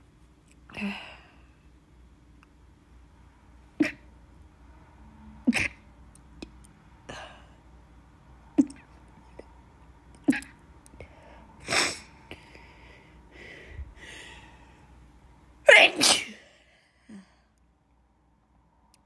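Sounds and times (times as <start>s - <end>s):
woman sneezing: 5.5s - 5.8s, 11.6s - 12.1s, 15.7s - 16.6s
breathy intakes of breath: 11.0s - 15.0s.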